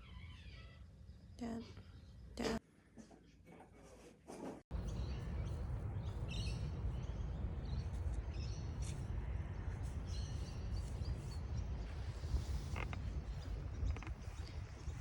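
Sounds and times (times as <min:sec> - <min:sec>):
wind rumble on microphone: 0:04.7 - 0:15.0
birds chirping: 0:04.8 - 0:15.0.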